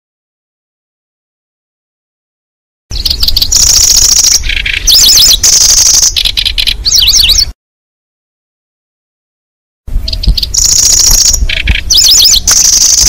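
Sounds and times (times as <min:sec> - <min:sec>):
recorded bird song trills: 0:02.9 - 0:07.6, 0:09.9 - 0:13.0.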